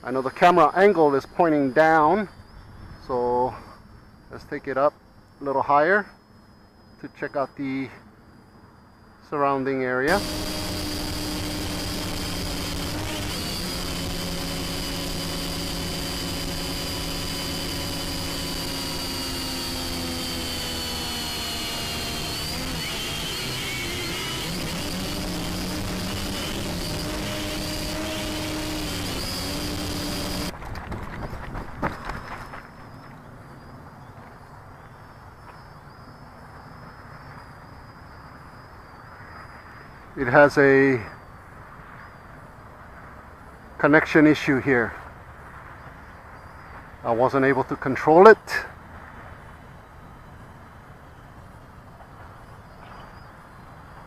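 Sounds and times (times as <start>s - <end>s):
quadcopter motors whining: 10.0s - 30.6s.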